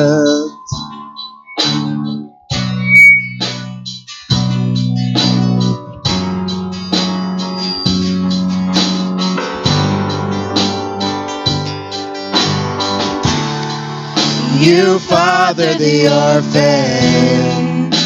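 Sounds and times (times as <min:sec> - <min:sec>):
guitar chords: 0:00.0 - 0:03.8, 0:14.4 - 0:17.4
bass guitar: 0:00.0 - 0:18.0.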